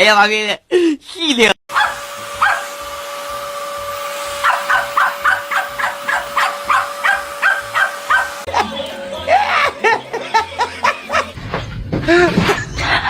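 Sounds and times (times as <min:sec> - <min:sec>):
dog yipping: 0:01.7 - 0:02.8, 0:04.3 - 0:08.5
motorised appliance humming: 0:01.7 - 0:09.0.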